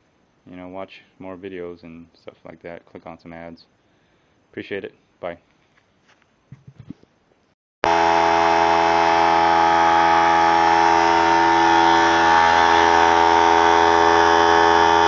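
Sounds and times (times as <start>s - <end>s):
air compressor running: 7.8s - 15.0s.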